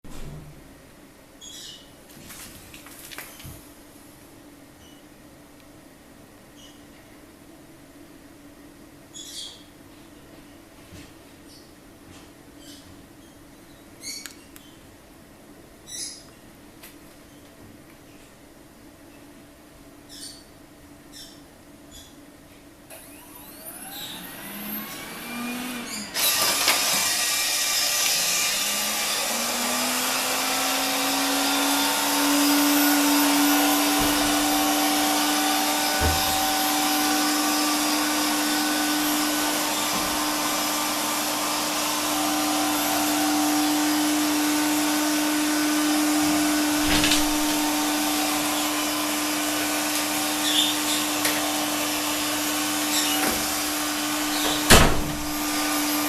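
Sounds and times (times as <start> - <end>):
robot vacuum cleaner running: 22.9 - 56.0.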